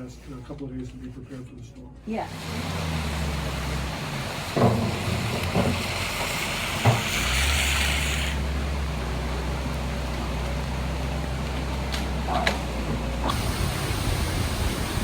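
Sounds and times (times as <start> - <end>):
hiss: 4.2 - 8.4, 13.2 - 15.0
wind buffeting microphone: 13.3 - 15.0.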